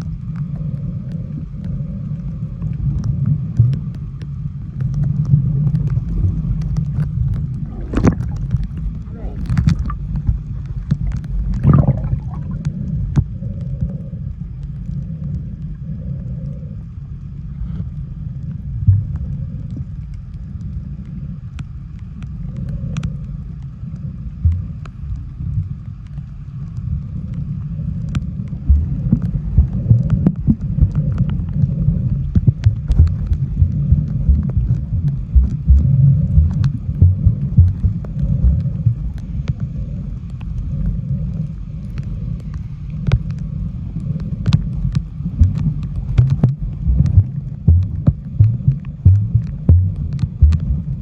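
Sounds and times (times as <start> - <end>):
boat engine rumbling: 4.6 - 13.4, 27.8 - 51.0.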